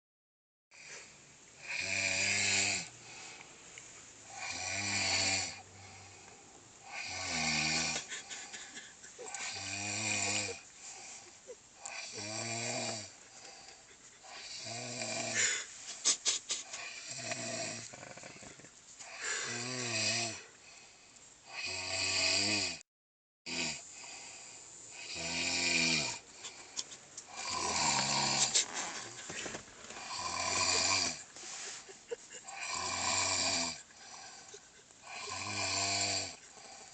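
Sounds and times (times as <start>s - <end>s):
person snoring: 0.8s - 3.4s, 4.2s - 20.5s, 21.4s - 22.8s, 23.5s - 36.9s
quiet breathing: 2.8s - 4.6s, 5.6s - 7.1s, 8.0s - 12.2s, 12.9s - 19.8s, 20.4s - 21.5s, 23.8s - 25.1s, 26.1s - 32.6s, 33.3s - 35.4s, 36.3s - 36.9s.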